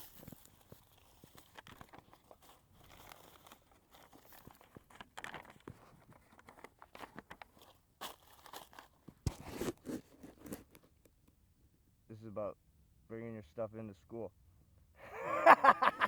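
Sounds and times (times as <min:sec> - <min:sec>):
paper crinkling: 0:00.0 - 0:11.1.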